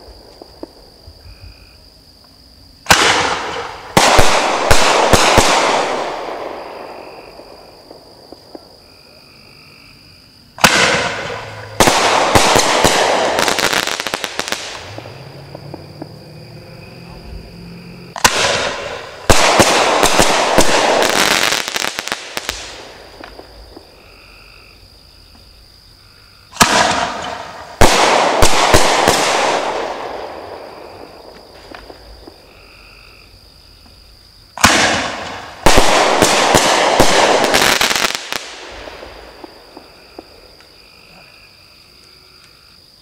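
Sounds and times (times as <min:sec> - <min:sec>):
firework bang and crackle: 0:02.8 - 0:08.9, 0:10.5 - 0:16.2, 0:18.1 - 0:24.7, 0:26.5 - 0:33.2, 0:33.8 - 0:40.7.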